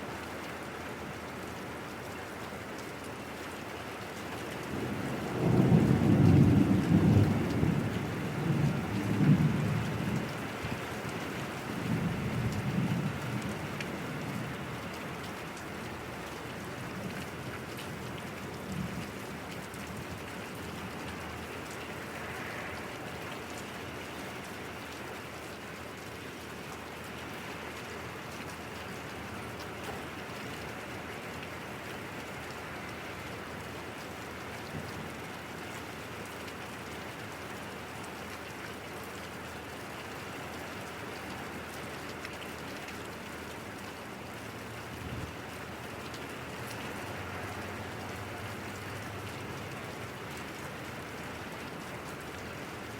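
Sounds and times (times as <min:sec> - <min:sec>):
steady rain falling: 0:00.0 - 0:52.9
low rumble of thunder: 0:04.6 - 0:15.1, 0:16.8 - 0:21.0.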